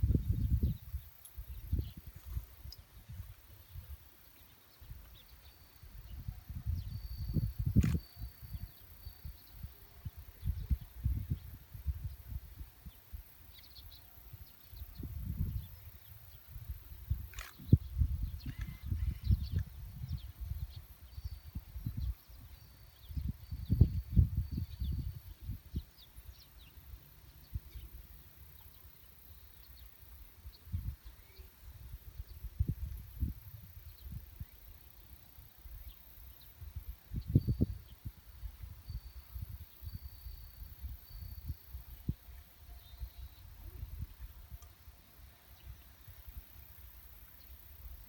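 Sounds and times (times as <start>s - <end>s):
wind buffeting microphone: 0.0s - 4.0s, 6.0s - 8.7s, 9.6s - 13.0s, 16.5s - 25.9s
faint high chirping: 0.2s - 34.7s, 35.6s - 46.4s.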